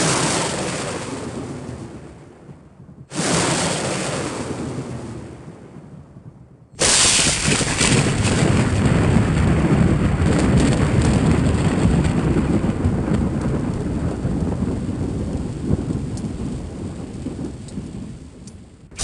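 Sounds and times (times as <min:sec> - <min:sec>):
heavy rain: 0:00.0 - 0:02.2, 0:03.1 - 0:05.2, 0:06.8 - 0:19.0
thunder rumbling: 0:00.0 - 0:19.0.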